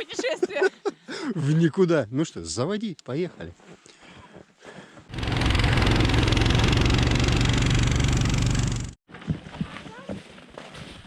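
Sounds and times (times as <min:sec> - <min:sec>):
small engine running: 0:05.1 - 0:09.0.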